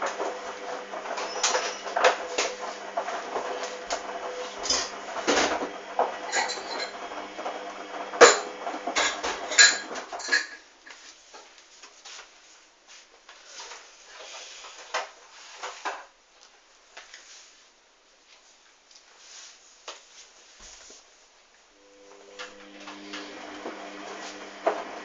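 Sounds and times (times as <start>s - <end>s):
washing machine drum humming: 0.0s - 10.6s, 22.0s - 25.0s.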